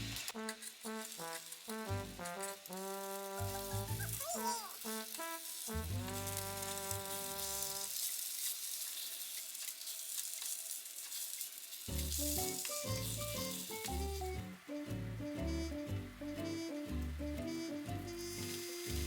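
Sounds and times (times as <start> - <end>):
background music: 0.0 - 7.9, 12.0 - 19.0
food sizzling in a pan: 0.0 - 19.0.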